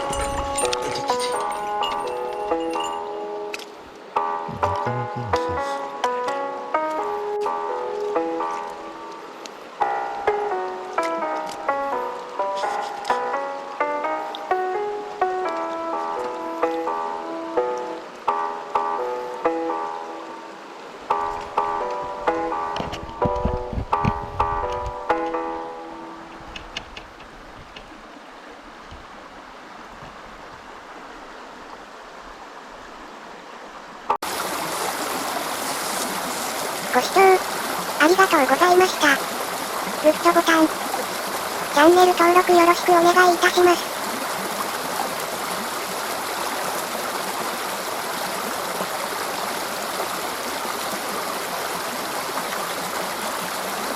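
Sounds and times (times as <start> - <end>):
river water rushing: 0.0 - 19.2, 27.2 - 53.9.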